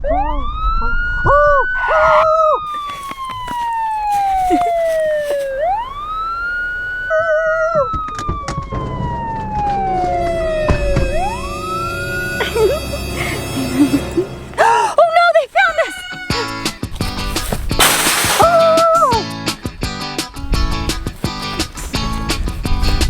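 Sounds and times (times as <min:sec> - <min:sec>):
police siren wailing: 0:00.0 - 0:02.8, 0:03.5 - 0:13.1
music: 0:08.7 - 0:14.6, 0:18.5 - 0:23.0.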